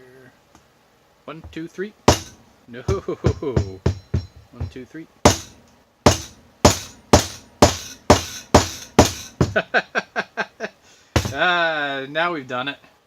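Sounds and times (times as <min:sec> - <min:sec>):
hammer striking metal: 0:02.1 - 0:09.6, 0:11.2 - 0:11.5.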